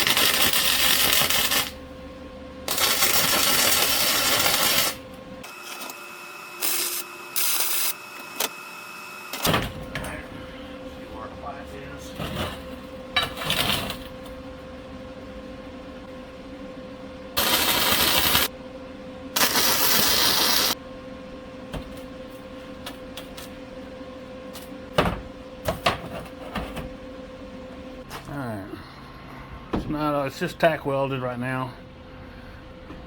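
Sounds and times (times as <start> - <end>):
welding arc hiss: 0.0 - 1.8, 2.7 - 5.0, 6.6 - 8.5, 17.4 - 18.5, 19.4 - 20.8.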